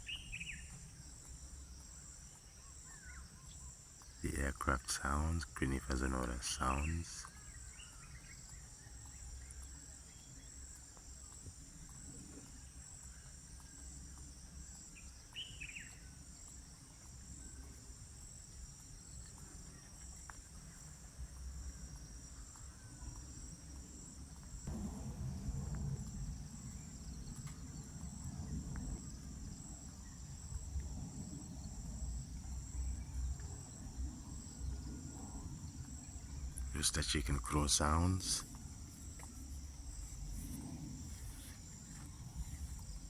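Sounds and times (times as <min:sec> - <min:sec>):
bird chirp: 0:00.0 - 0:10.9, 0:12.5 - 0:17.7
insects trilling: 0:00.0 - 0:43.0
low rumble: 0:24.7 - 0:27.9.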